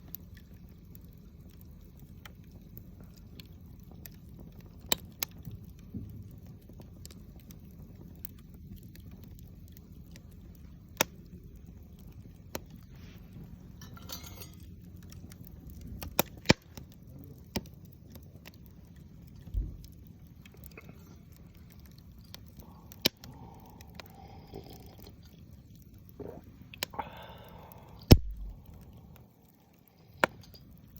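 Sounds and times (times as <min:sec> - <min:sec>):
wood fire crackling: 0:00.0 - 0:30.9
sharp pops: 0:16.0 - 0:16.8, 0:22.3 - 0:24.1, 0:27.9 - 0:28.8, 0:30.2 - 0:30.6
low steady rush: 0:20.1 - 0:30.9.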